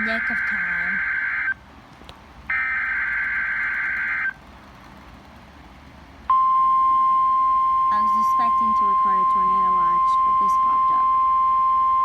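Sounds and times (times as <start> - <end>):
steady warning tone: 0.0 - 1.6, 2.5 - 4.4, 6.3 - 12.0.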